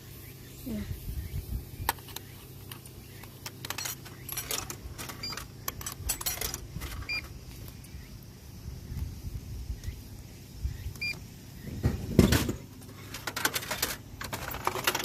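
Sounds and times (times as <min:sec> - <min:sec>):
steady low hum: 0:00.0 - 0:15.0
coins clinking into vending machine: 0:03.5 - 0:07.2, 0:13.0 - 0:15.0.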